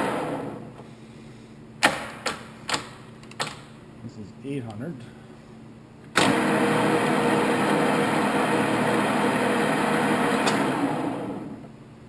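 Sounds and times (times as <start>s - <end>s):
drill press gear whirring: 6.1s - 11.7s.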